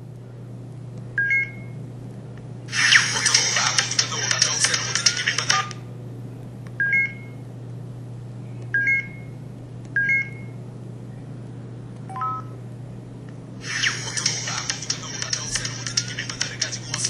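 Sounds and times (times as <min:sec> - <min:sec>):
noisy hissing effect: 0:02.7 - 0:05.6, 0:13.6 - 0:17.0.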